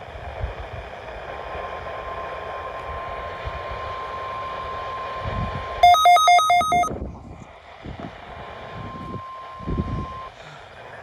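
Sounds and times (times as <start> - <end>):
electronic two-tone beep: 5.8 - 6.9
faint constant tone: 5.8 - 7.0.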